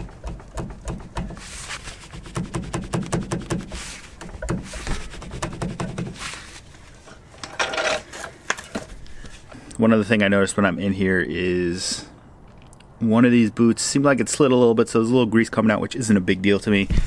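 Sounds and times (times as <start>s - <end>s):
suspension arm knocks and clicks: 0.0s - 6.2s.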